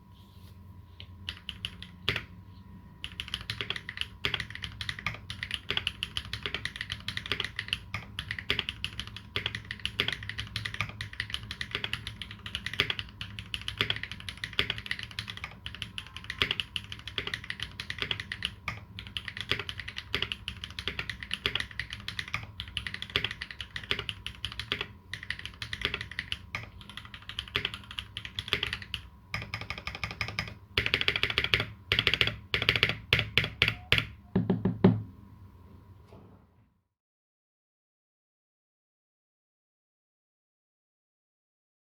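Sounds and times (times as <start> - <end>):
mechanical keyboard typing: 1.2 - 2.3, 3.0 - 34.8.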